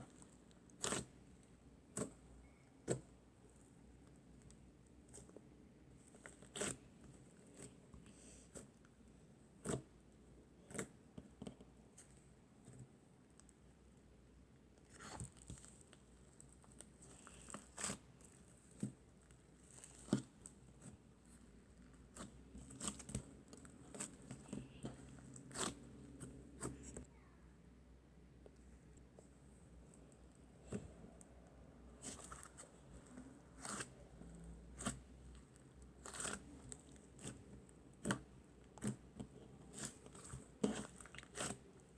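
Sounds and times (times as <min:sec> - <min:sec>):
slime squished by hand: 0:31.9 - 0:41.9.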